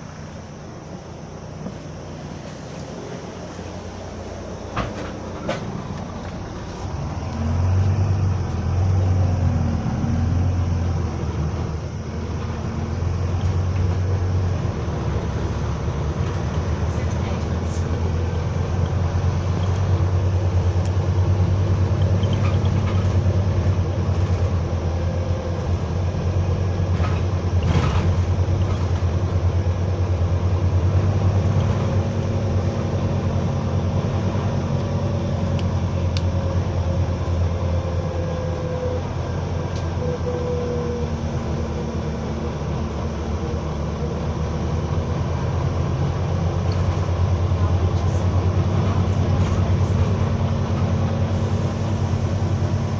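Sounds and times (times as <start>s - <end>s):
bus engine droning: 0.0s - 52.9s.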